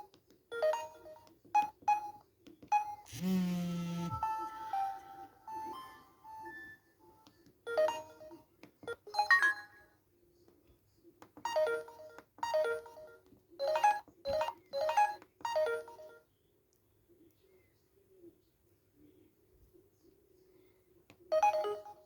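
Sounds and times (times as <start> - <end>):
phone ringtone melody: 0.5 - 2.2, 3.8 - 9.8, 11.5 - 16.2, 21.3 - 22.0.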